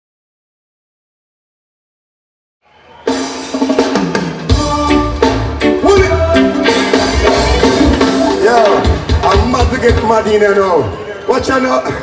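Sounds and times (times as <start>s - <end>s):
reggae band playing: 2.7s - 12.0s
heavy bass: 4.5s - 10.0s
keyboard tones: 6.2s - 9.0s.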